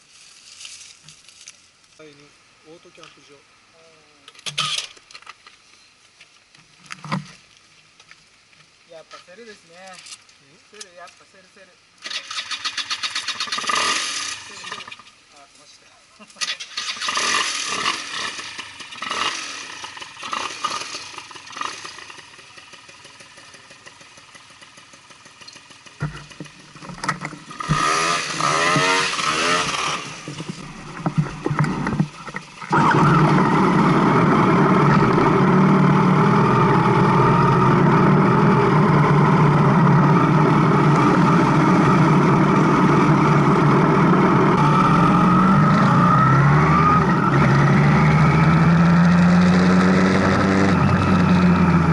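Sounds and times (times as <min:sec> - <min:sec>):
motorcycle engine cranking and idling: 0:12.0 - 0:15.2, 0:16.2 - 0:51.9.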